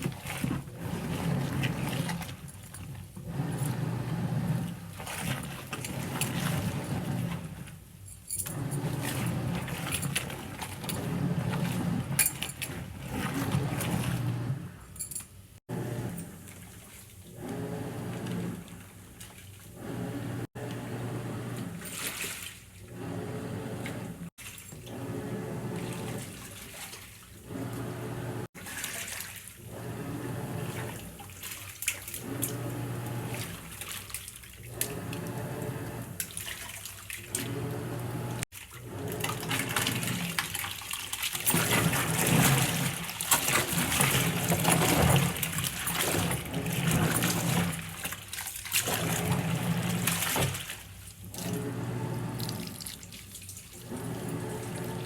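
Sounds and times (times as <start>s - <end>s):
water pouring and splashing: 0.0s - 3.5s, 4.4s - 7.6s, 21.8s - 22.8s, 25.6s - 27.4s, 28.5s - 29.8s, 30.5s - 35.4s, 36.0s - 55.0s.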